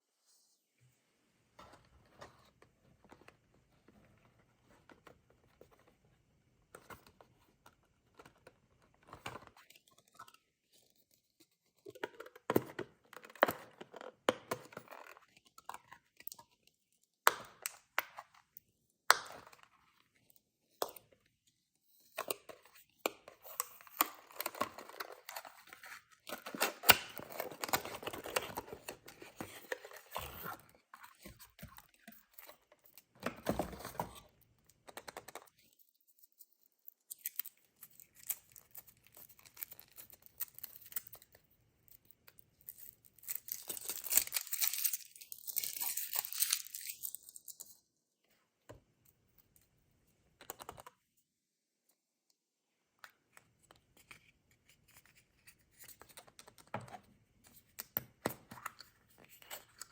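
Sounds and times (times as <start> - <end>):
foil wrapper crinkling: 43.2 - 47.6.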